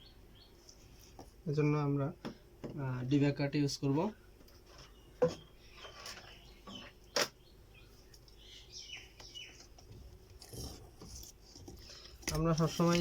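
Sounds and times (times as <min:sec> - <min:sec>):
faint bird chirps: 0:04.8 - 0:09.7.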